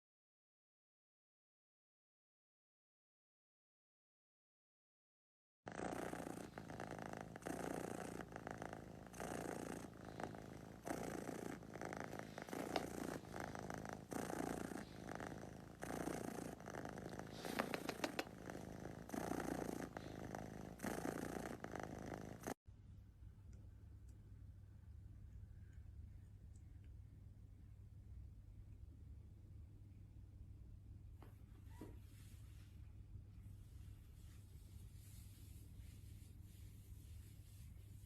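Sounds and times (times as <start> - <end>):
cat purring: 5.7 - 22.6.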